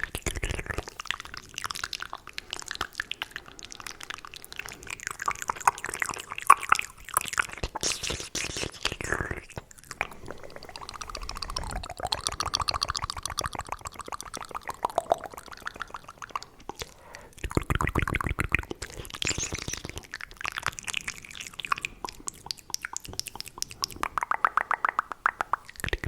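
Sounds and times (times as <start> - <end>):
wet mouth clicks and smacks: 0.0 - 26.0.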